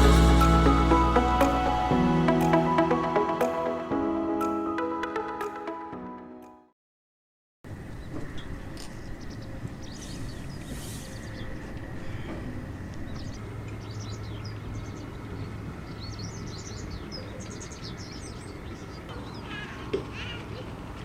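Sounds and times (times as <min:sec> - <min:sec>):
small birds chirping: 0:07.9 - 0:20.7.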